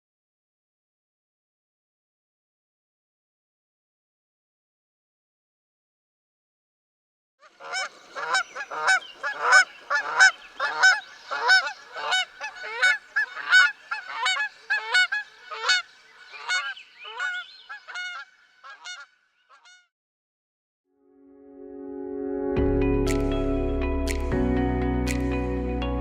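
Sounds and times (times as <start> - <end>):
geese honking: 7.4 - 19.8.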